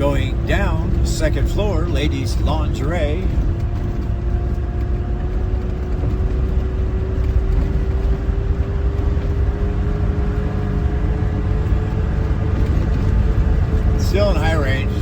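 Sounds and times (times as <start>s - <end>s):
engine and drivetrain whine: 0.0s - 15.0s
low road noise: 0.0s - 15.0s.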